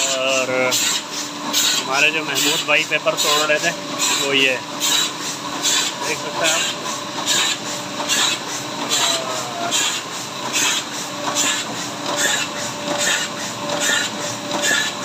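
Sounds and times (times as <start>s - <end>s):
printing press clattering: 1.6s - 15.0s.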